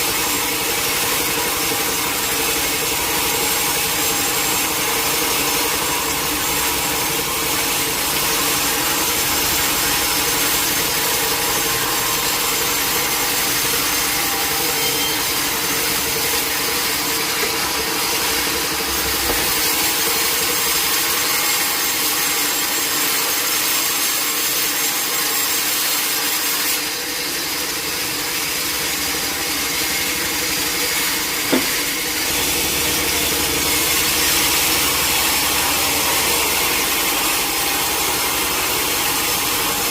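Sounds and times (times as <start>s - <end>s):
saw cutting through log: 0.0s - 39.9s
short knock: 31.5s - 31.8s.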